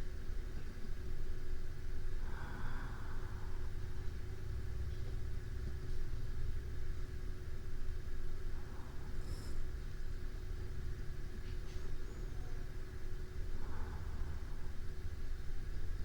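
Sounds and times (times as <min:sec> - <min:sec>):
faint hum: 0:00.0 - 0:16.0
person breathing softly: 0:02.1 - 0:04.2, 0:08.4 - 0:09.9, 0:13.4 - 0:15.0.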